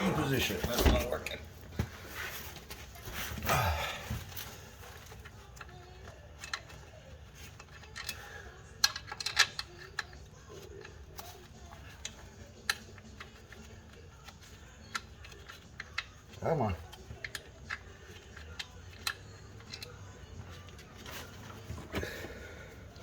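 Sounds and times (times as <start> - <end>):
sharp clicks and metal taps: 8.8 - 10.2.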